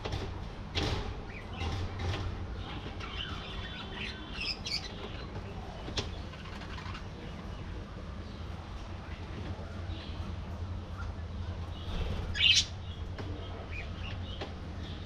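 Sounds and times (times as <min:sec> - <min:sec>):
budgerigars chirping: 0:02.7 - 0:05.4, 0:11.8 - 0:13.0.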